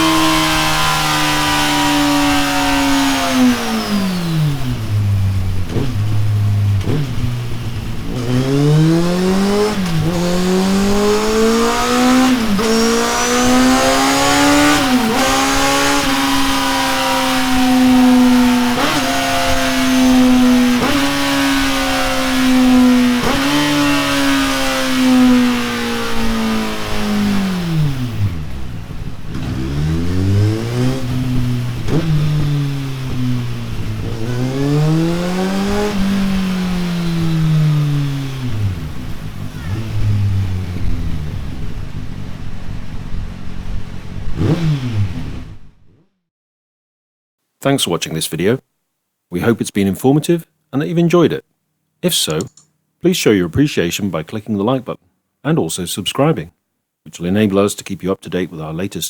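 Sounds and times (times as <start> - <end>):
motorcycle engine revving: 0.0 - 46.0.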